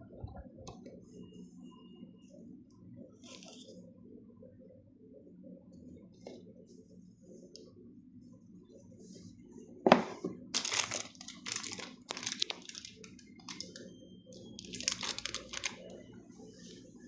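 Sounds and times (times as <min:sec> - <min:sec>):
packaging crumpling and crinkling: 0:10.5 - 0:16.0.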